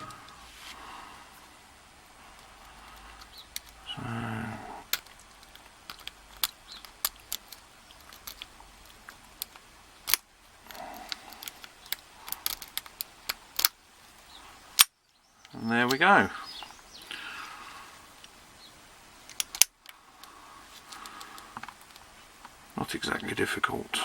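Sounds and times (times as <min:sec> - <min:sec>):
lock pick scraping in padlock: 0:04.9 - 0:08.6, 0:09.4 - 0:13.8, 0:19.3 - 0:19.7.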